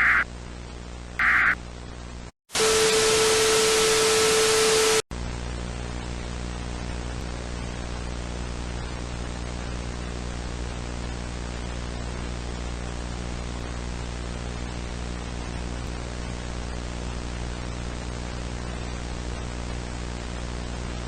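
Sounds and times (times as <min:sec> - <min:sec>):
tv static hiss: 0:00.0 - 0:00.2, 0:01.2 - 0:01.6
low buzzing hum: 0:00.0 - 0:03.3.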